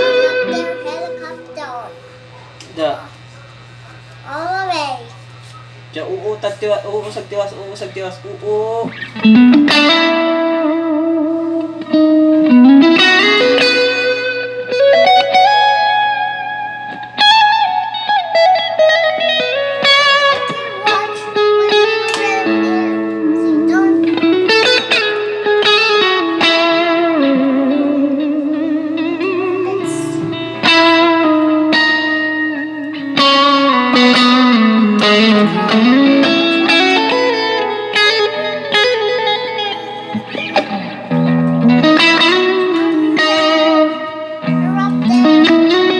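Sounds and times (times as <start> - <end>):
steady low hum: 0.0 - 26.2
electric guitar lead line: 0.0 - 45.9.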